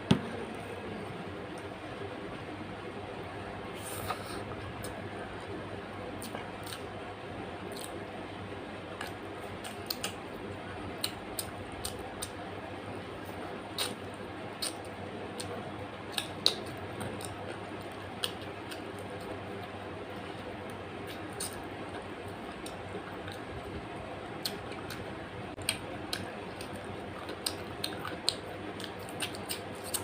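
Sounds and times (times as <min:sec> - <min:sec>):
chewing and mouth smacks: 0:06.2 - 0:06.8, 0:09.0 - 0:10.2, 0:13.7 - 0:19.7, 0:21.0 - 0:23.5, 0:24.4 - 0:30.0.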